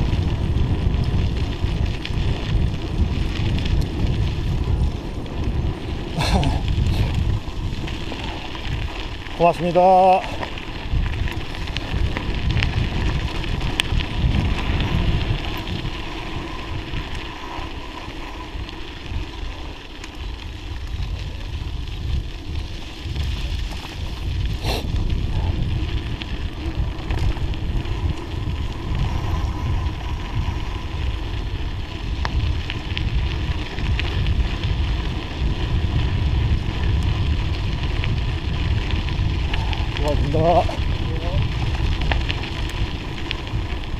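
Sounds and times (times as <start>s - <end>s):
bicycle tyres rolling on snow: 0.0s - 43.9s
wind buffeting microphone: 0.0s - 43.9s.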